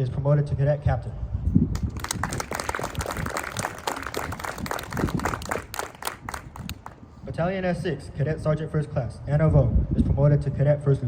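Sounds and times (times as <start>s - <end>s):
audience applauding: 1.8s - 7.0s.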